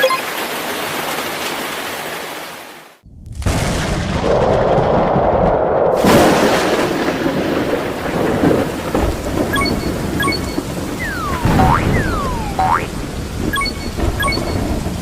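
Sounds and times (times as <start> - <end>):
steady rain: 0.0 - 15.0
rolling thunder: 3.1 - 15.0.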